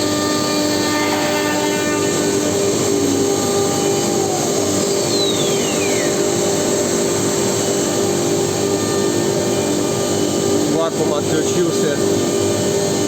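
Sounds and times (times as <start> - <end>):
vacuum pump running: 0.0 - 13.0
faint whine falling in pitch: 3.0 - 6.8.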